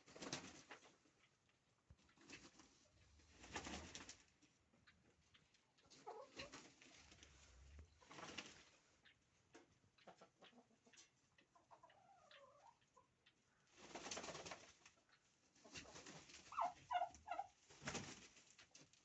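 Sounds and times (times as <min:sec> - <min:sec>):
turkeys calling: 0:09.9 - 0:13.7, 0:15.0 - 0:17.6.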